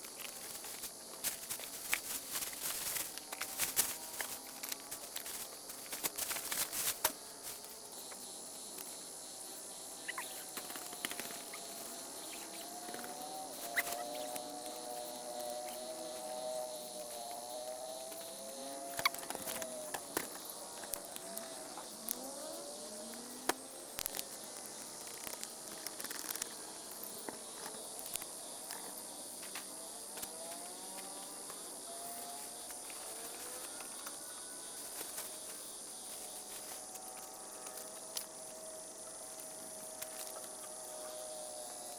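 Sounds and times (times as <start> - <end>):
rustling crackles: 0.0 - 7.8, 23.2 - 29.7, 30.5 - 38.3
high-pitched night ambience drone: 0.0 - 41.9
insects trilling: 0.0 - 41.9.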